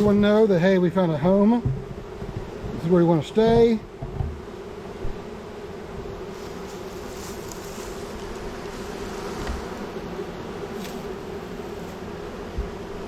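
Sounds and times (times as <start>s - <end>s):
honeybees buzzing: 0.0s - 13.0s
low bump: 1.4s - 5.2s.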